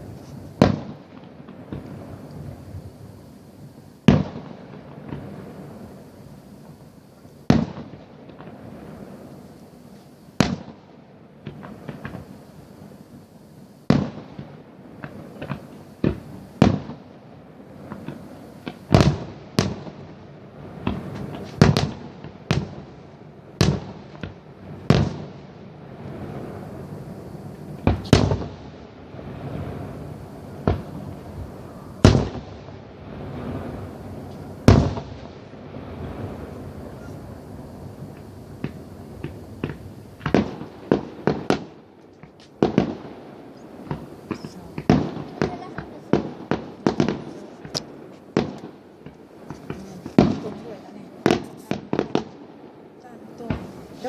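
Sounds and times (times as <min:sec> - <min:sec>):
distant fireworks crackle: 0:00.0 - 0:54.0
fireworks bangs: 0:00.0 - 0:54.0.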